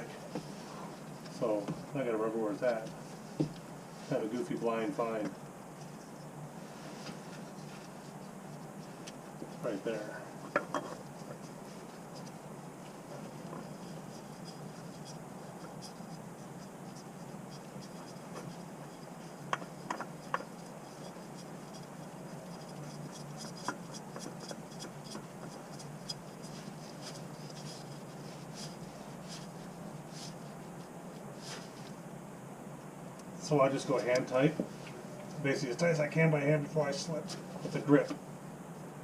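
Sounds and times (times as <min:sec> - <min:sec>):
steady low hum: 0:00.0 - 0:39.0
oil filter scraping and rubbing: 0:05.8 - 0:32.0.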